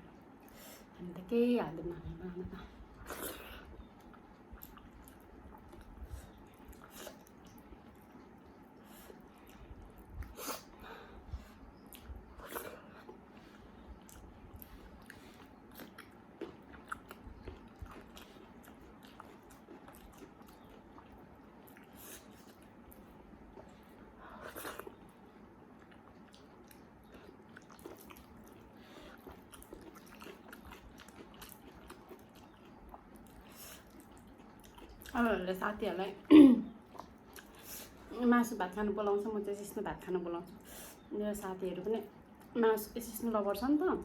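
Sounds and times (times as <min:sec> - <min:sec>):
person chewing and smacking: 0:02.8 - 0:35.4, 0:36.7 - 0:38.2.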